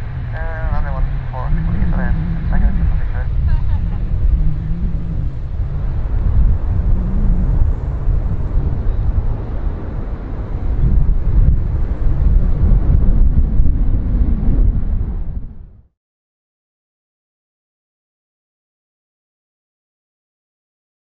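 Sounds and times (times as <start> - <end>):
aircraft engines rumbling: 0.0 - 15.8
wind buffeting microphone: 0.0 - 15.9.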